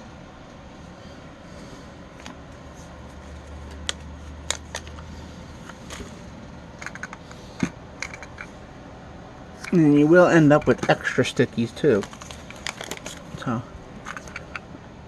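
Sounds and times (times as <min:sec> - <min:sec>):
low steady hum: 0:00.0 - 0:15.0
adhesive backing rustling: 0:11.8 - 0:14.3.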